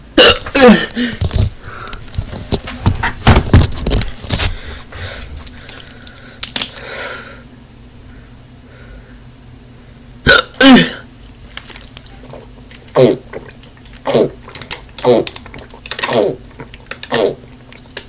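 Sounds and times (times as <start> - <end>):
person hiccupping: 0.0 - 1.8, 10.2 - 11.1, 12.4 - 17.8.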